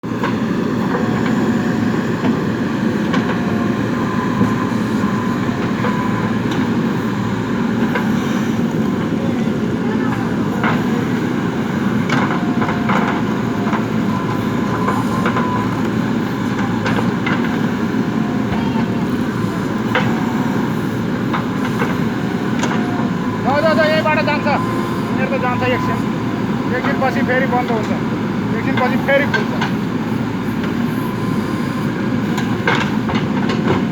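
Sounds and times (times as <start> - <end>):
diesel engine running: 0.0 - 33.9.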